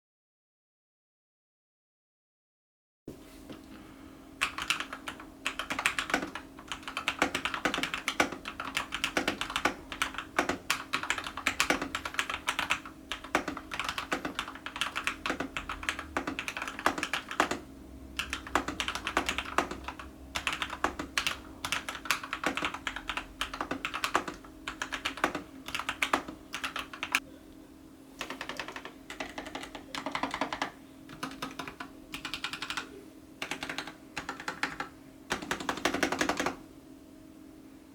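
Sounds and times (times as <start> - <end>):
faint steady hum: 3.1 - 37.9
mechanical keyboard typing: 4.4 - 27.2, 28.2 - 36.6.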